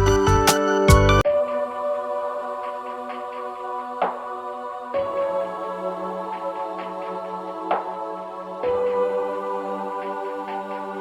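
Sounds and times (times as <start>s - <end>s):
soft keyboard chords: 0.0s - 5.5s.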